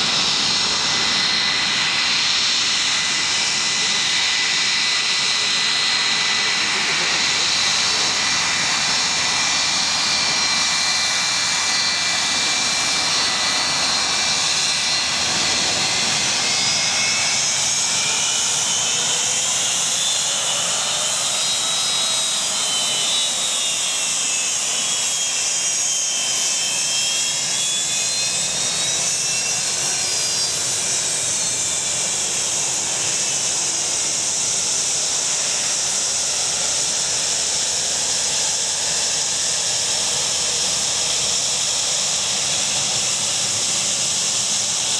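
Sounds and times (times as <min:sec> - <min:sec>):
jet engine whine: 0:00.0 - 0:44.9.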